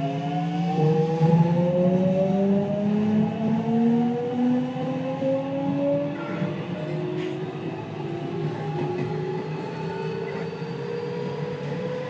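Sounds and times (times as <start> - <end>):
train inverter whining in rising tones: 0.0 - 12.0.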